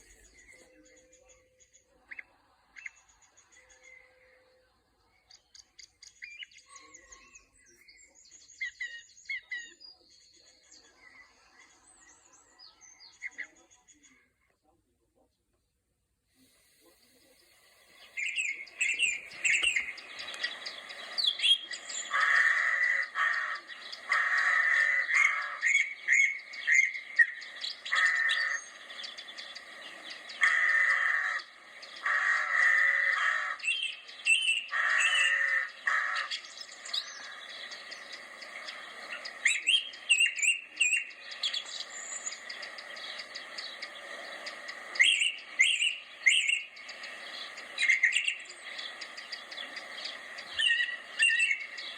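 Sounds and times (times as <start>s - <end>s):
harsh bird calls: 0.0s - 14.4s, 16.4s - 51.9s
birds chirping: 0.0s - 15.8s, 16.4s - 51.9s.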